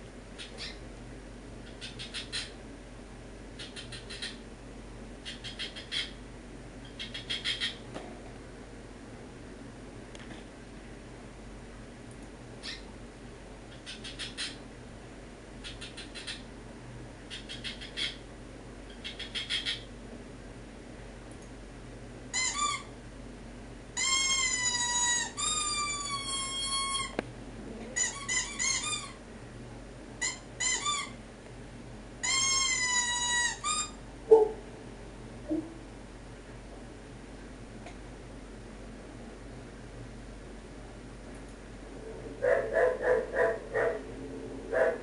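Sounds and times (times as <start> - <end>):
dog whining: 42.0 - 44.1, 44.7 - 45.0.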